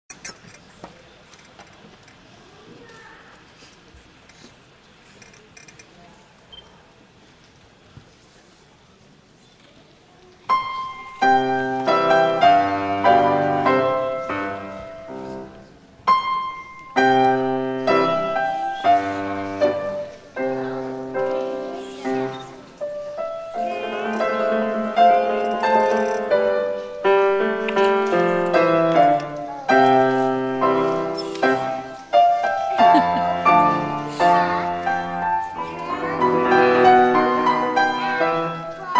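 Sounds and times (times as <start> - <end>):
classical piano music: 10.5 - 38.9.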